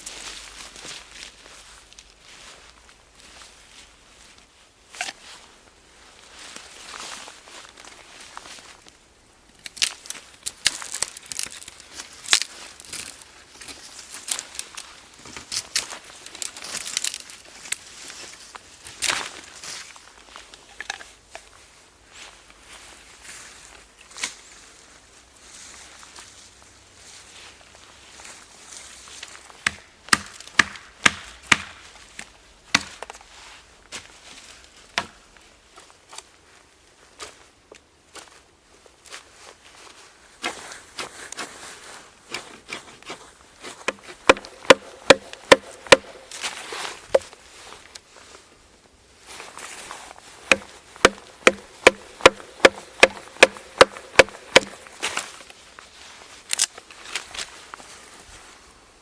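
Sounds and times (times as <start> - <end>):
axe chopping wood: 29.6 - 31.8, 32.7 - 33.1, 35.0 - 35.2, 43.8 - 46.5, 47.1 - 47.4, 50.5 - 55.1.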